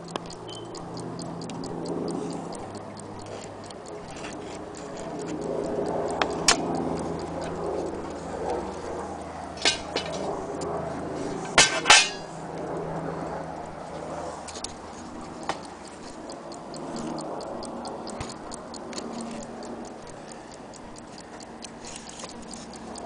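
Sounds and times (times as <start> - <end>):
clock ticking: 0.0 - 23.0
sharp knocks and clinks: 11.5 - 12.3.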